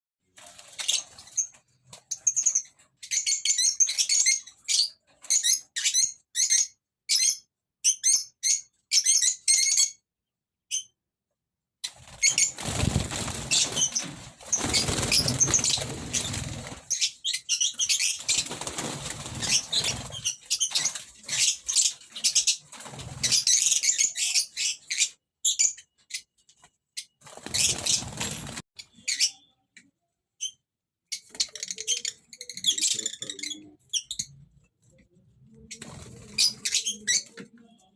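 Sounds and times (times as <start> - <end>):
small birds chirping: 11.8 - 37.9
wings flapping: 11.9 - 17.1, 18.0 - 21.1, 27.2 - 28.6, 35.7 - 37.0.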